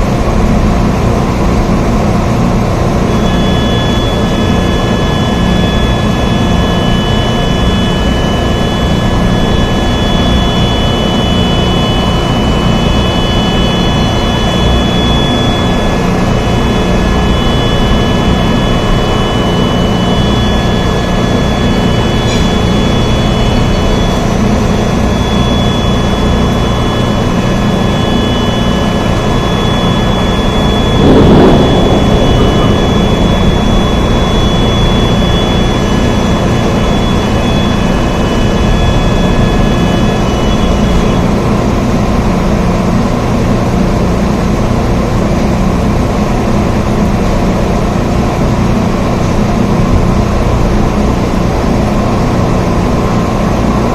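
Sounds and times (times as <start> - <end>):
faint high-pitched tones: 3.1 - 42.2.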